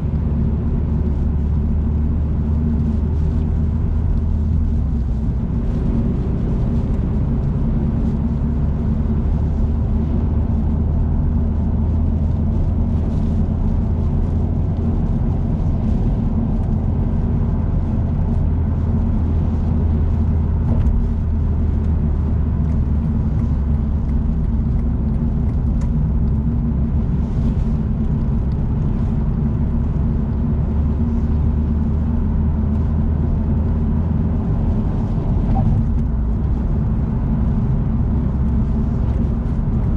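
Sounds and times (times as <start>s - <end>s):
engine drone: 0.0s - 39.9s
road and tyre noise: 0.0s - 39.9s.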